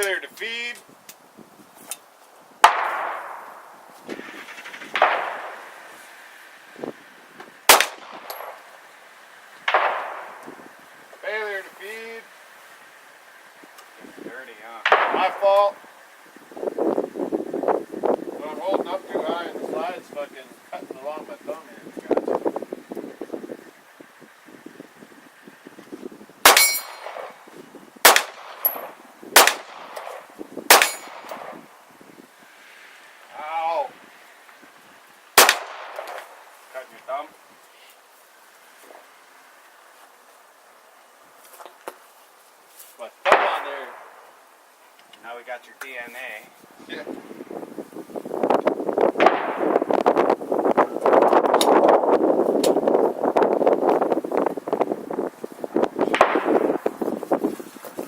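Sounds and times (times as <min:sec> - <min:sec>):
pistol shots with echo: 0:02.6 - 0:03.7, 0:04.3 - 0:05.8, 0:07.7 - 0:08.7, 0:09.6 - 0:10.4, 0:14.8 - 0:15.7, 0:26.4 - 0:27.4, 0:28.0 - 0:31.6, 0:35.4 - 0:36.4, 0:43.2 - 0:44.2, 0:56.1 - 0:56.8.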